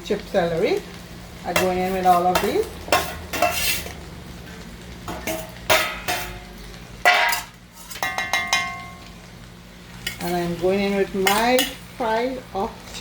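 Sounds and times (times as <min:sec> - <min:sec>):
utensils clattering on dishes: 0:01.6 - 0:03.9, 0:05.1 - 0:06.4, 0:07.0 - 0:09.0.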